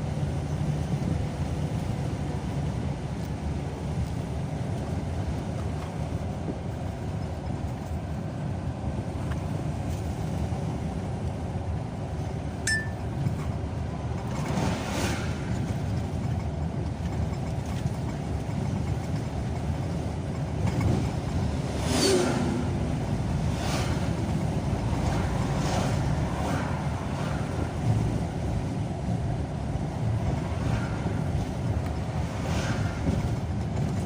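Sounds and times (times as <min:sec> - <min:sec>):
car road and engine rumble: 0:00.0 - 0:34.0
vehicle rushing past: 0:21.6 - 0:24.2.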